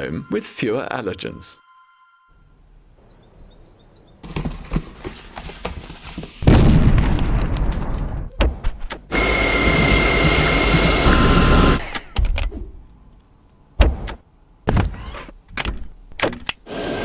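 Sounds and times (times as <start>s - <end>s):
vacuum cleaner motor running: 9.1s - 11.8s, 16.7s - 17.0s.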